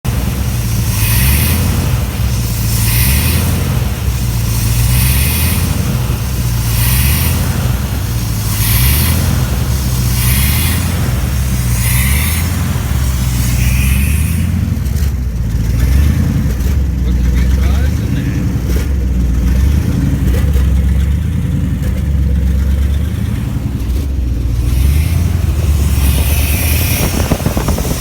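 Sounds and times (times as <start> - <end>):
engine hiss: 0.0 - 28.0
engine surging at idle: 0.0 - 28.0.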